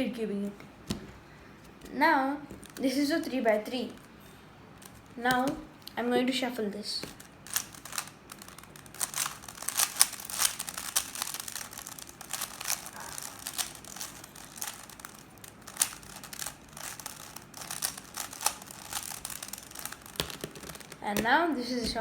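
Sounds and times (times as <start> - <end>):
puzzle cube clicking and clacking: 4.8 - 5.7, 7.0 - 22.0.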